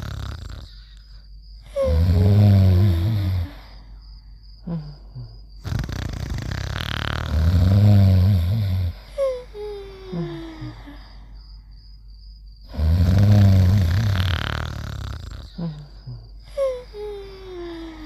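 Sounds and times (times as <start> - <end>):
cartoon snoring: 0.0 - 3.8, 4.6 - 9.2, 12.7 - 18.0.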